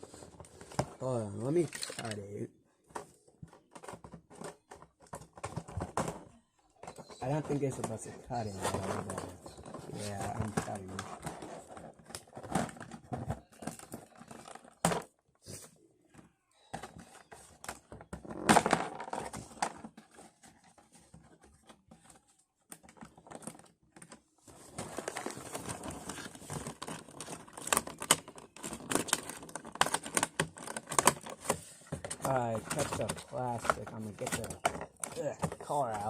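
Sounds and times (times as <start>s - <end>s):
plastic packaging crinkling: 22.8s - 36.0s.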